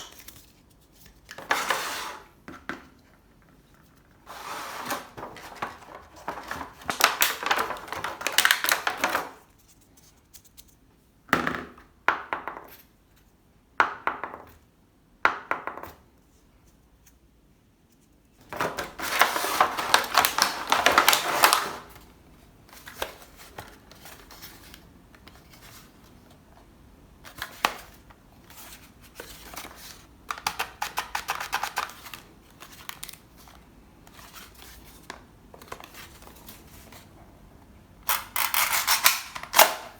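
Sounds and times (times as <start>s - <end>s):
packaging crinkling and tearing: 4.9s - 9.5s, 18.5s - 22.1s, 30.3s - 34.6s.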